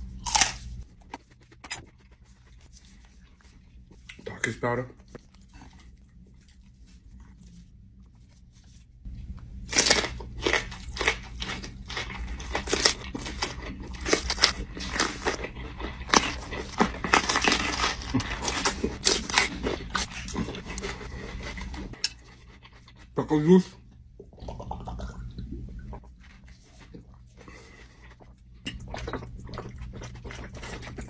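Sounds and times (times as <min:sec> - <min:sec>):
snack bag crinkling: 0:09.6 - 0:22.0.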